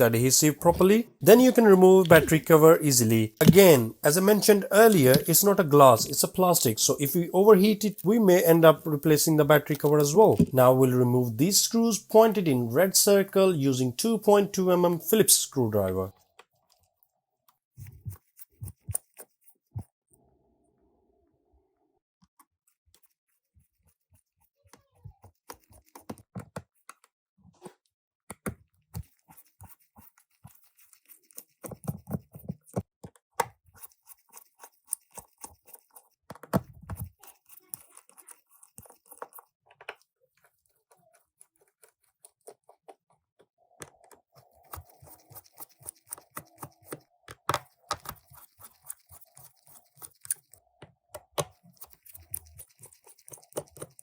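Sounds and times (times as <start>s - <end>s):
small tools clicking on plastic: 30.6s - 50.6s, 51.2s - 54.0s.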